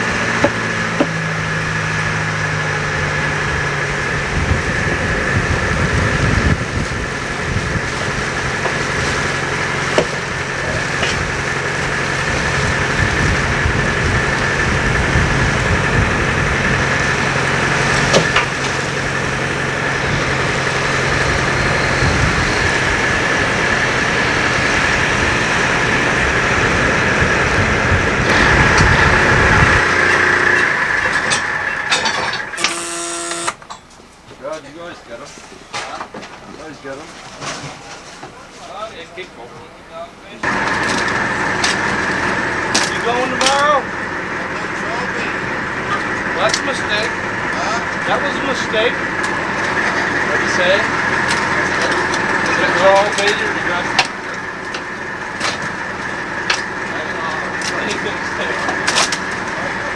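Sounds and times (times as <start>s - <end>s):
boat engine running: 0.0s - 34.2s.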